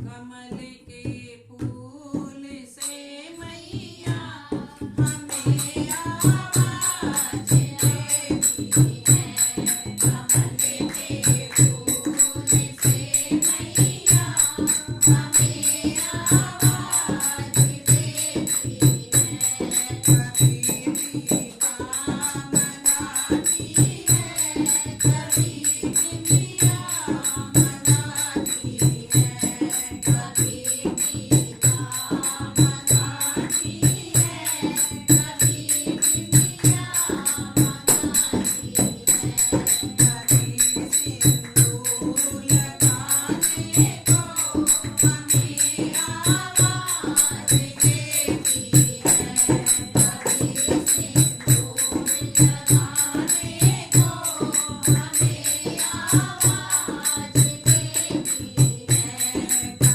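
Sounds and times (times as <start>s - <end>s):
steady drum beat: 3.6s - 59.9s
tambourine jingles: 5.0s - 59.9s.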